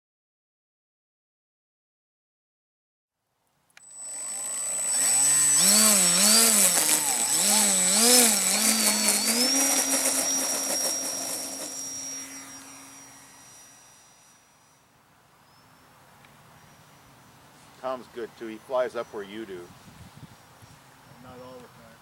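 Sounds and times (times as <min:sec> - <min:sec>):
model plane electric motor whining: 0:03.8 - 0:14.4.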